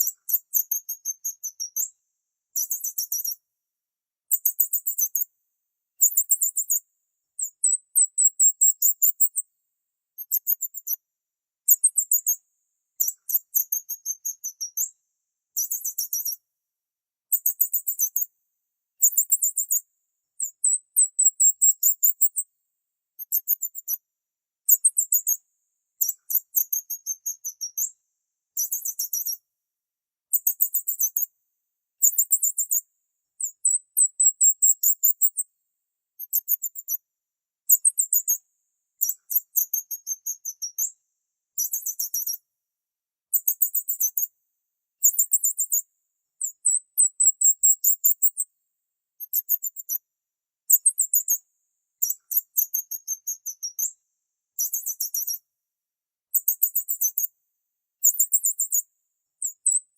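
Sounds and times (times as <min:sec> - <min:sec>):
high-pitched bird chirping: 0:00.0 - 0:01.9, 0:02.6 - 0:03.4, 0:07.4 - 0:09.4, 0:13.0 - 0:14.9, 0:15.6 - 0:16.4, 0:20.4 - 0:22.4, 0:33.4 - 0:35.4, 0:46.4 - 0:48.4, 0:54.6 - 0:55.4.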